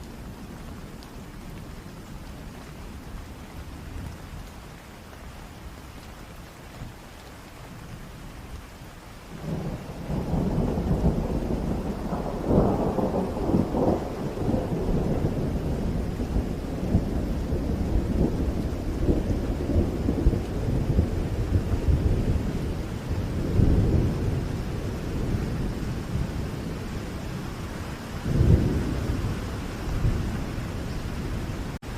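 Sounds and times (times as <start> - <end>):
heavy rain falling: 0.0 - 31.9
thunder rumbling: 9.4 - 31.9.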